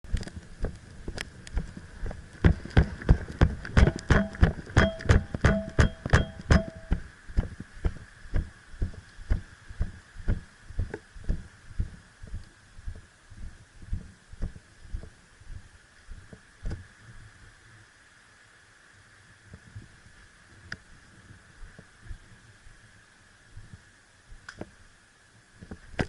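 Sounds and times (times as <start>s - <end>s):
footsteps dull thuds: 0.1s - 16.8s.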